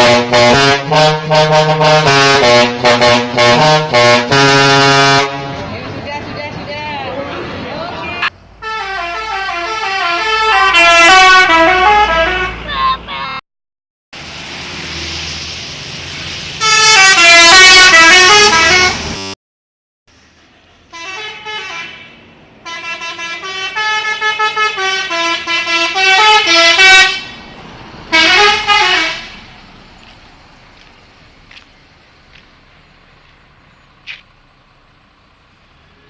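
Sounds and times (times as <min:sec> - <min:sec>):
musical air horn melodies: 0:00.0 - 0:05.7, 0:08.6 - 0:12.7, 0:16.6 - 0:19.4, 0:20.9 - 0:27.4, 0:28.1 - 0:29.4.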